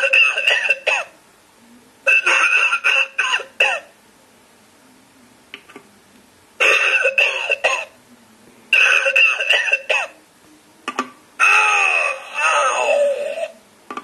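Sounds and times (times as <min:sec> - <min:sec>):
recorded coughing through small speaker: 0:00.0 - 0:01.2, 0:02.1 - 0:04.0, 0:06.6 - 0:08.0, 0:08.7 - 0:10.2.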